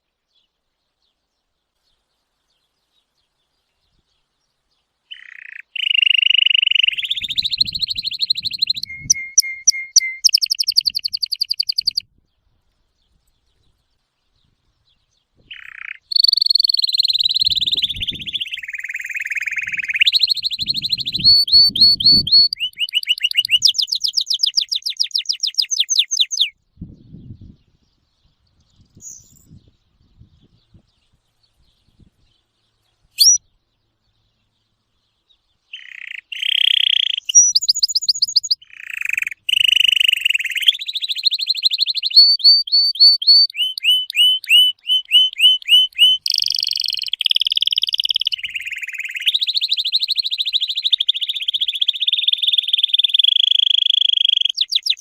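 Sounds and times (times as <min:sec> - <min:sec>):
birds chirping and trilling: 0:00.2 - 0:55.0.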